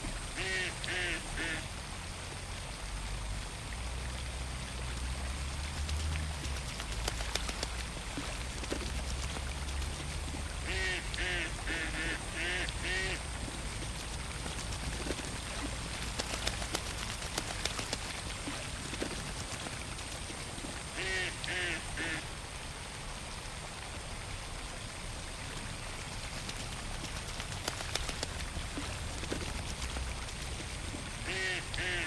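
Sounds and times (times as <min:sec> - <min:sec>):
water patter: 0:00.0 - 0:32.0
duck quacking: 0:00.4 - 0:01.6, 0:10.7 - 0:13.2, 0:21.0 - 0:22.2, 0:31.3 - 0:32.0.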